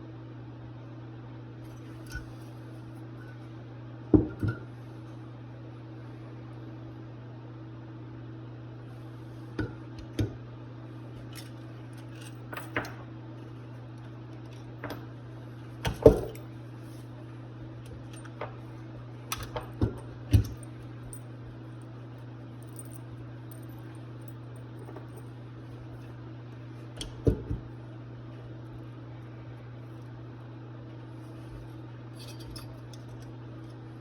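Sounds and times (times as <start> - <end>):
steady low hum: 0.0 - 34.0
metal parts clinking: 11.3 - 13.0, 22.6 - 25.3, 32.2 - 33.8.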